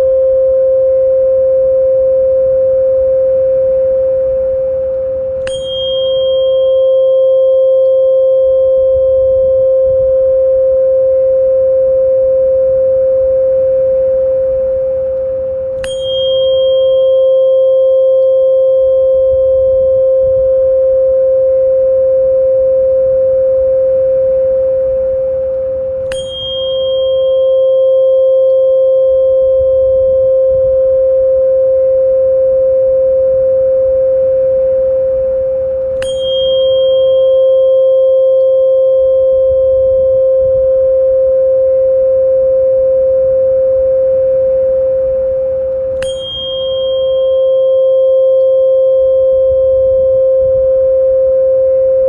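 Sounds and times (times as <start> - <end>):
faint low rumble: 0.0 - 46.0, 46.6 - 52.0
steady pure tone: 0.0 - 52.0
soft struck chime: 4.9 - 10.1, 13.5 - 21.0, 23.5 - 31.2, 33.9 - 40.6, 44.0 - 52.0.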